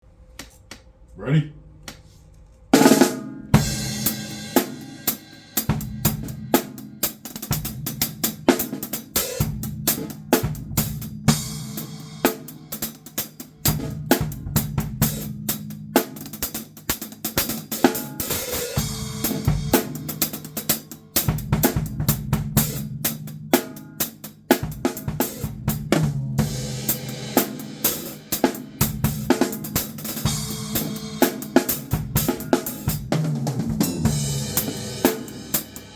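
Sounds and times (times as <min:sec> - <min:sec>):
drum solo: 0:02.7 - 0:35.9
loud cymbal crash: 0:03.0 - 0:07.0.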